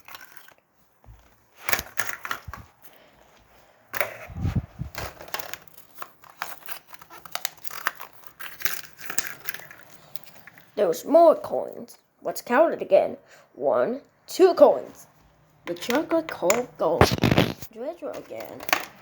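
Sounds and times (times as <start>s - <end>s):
candy wrappers crinkling: 5.2s - 10.6s, 17.0s - 17.7s.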